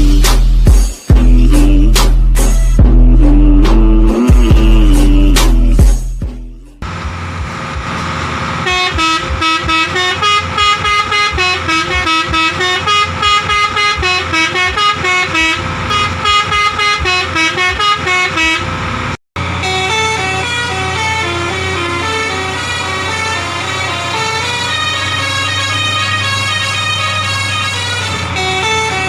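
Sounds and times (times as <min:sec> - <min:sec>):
musical air horn tune: 0:08.6 - 0:18.8, 0:19.6 - 0:29.0.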